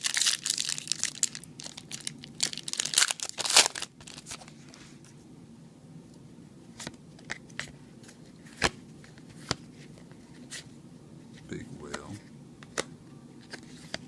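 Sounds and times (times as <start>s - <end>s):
foil wrapper crinkling and tearing: 0.0s - 4.5s.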